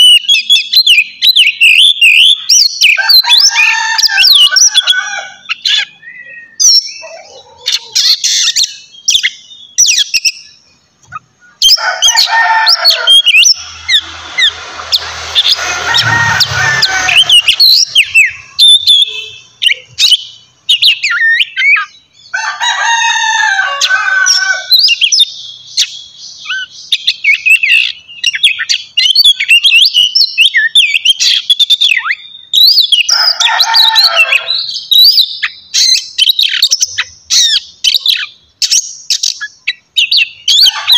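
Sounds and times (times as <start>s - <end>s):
bird singing whistles and chirps: 0.0s - 4.8s, 5.4s - 10.6s, 12.6s - 22.3s, 24.7s - 33.4s
bird harsh rasping: 11.2s - 20.2s.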